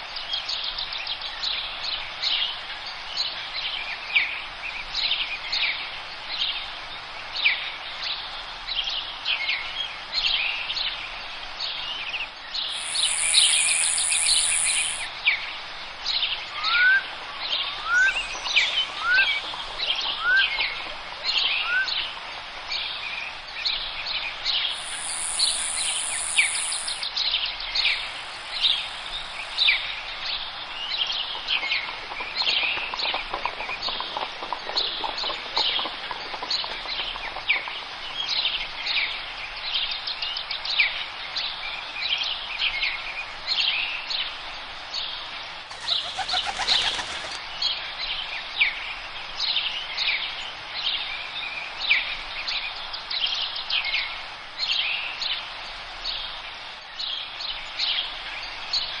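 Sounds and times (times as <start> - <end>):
songbirds chirping and twittering: 0.0 - 59.0
low pulsing bird call: 12.7 - 15.1, 24.7 - 27.0.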